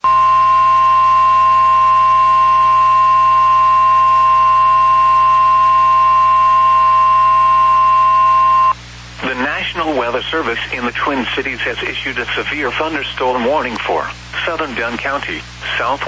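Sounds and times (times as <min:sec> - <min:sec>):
loud electronic alarm tone: 0:00.0 - 0:08.8.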